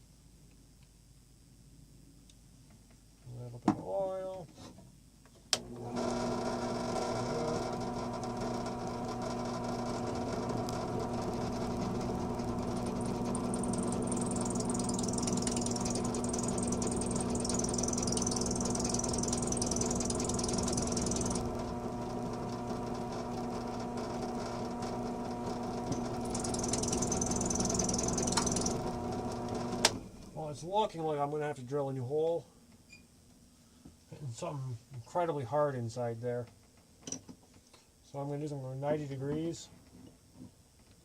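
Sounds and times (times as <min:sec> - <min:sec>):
electric drill running: 0:05.6 - 0:30.2
high-pitched drill squeal: 0:12.3 - 0:21.7, 0:25.9 - 0:29.0.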